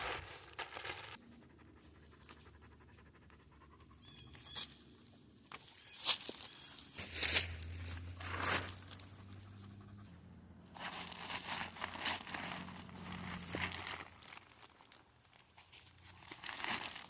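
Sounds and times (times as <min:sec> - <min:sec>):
rustling and crinkling handling: 0:00.0 - 0:01.2, 0:04.6 - 0:09.2, 0:10.7 - 0:17.0.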